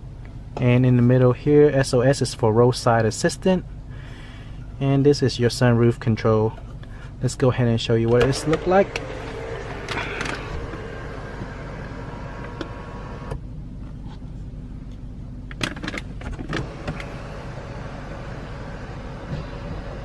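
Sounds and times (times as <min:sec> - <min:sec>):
sunroof motor whine: 0:08.0 - 0:13.9, 0:15.5 - 0:20.0.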